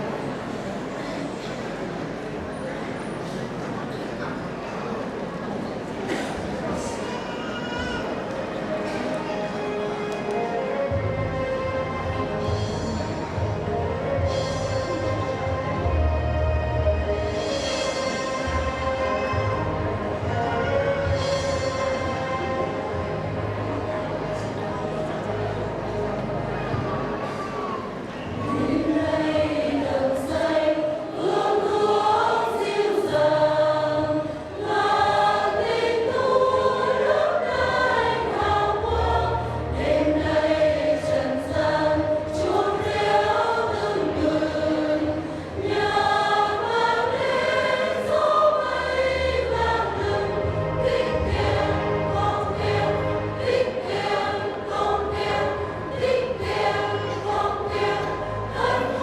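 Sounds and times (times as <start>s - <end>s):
instrumental accompaniment: 8.9s - 27.6s, 28.7s - 59.0s
choir singing: 27.2s - 59.0s.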